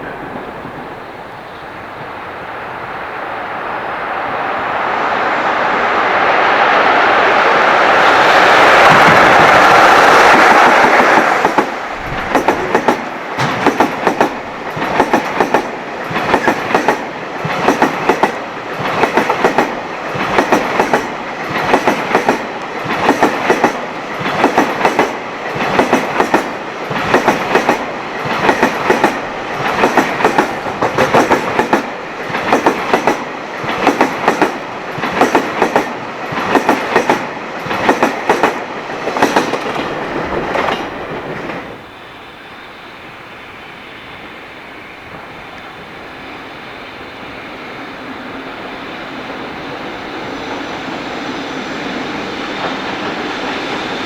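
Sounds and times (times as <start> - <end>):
train wheels clattering over rail joints: 10.3 - 41.8.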